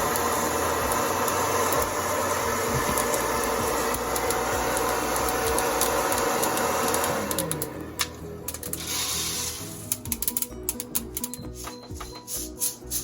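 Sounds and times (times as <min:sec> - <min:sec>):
small electric motor running: 0:00.0 - 0:07.9
coffee beans rattling: 0:08.5 - 0:13.0.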